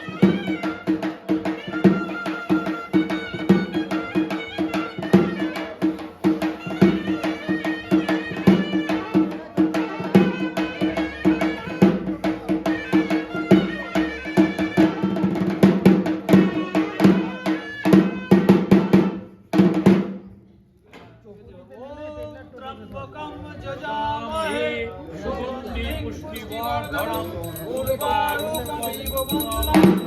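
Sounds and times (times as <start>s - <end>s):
quick steady drumming: 25.8s - 30.0s.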